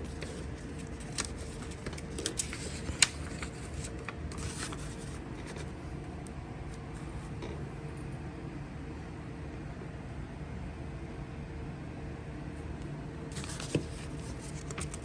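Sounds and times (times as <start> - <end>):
booklet pages rustling: 0.0 - 5.8, 13.3 - 15.0
faint steady hum: 0.0 - 15.0.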